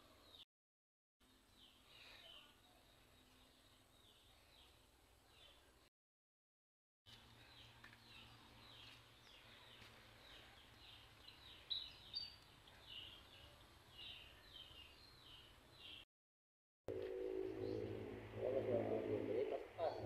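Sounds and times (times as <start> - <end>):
birds chirping: 7.2 - 16.0, 16.9 - 20.0
faint steady low hum: 16.9 - 20.0.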